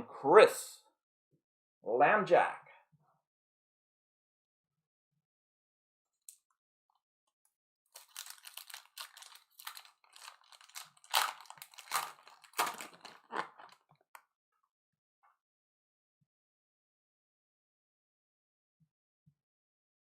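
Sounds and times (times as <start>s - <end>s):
foil wrapper tearing and crinkling: 8.0s - 13.8s.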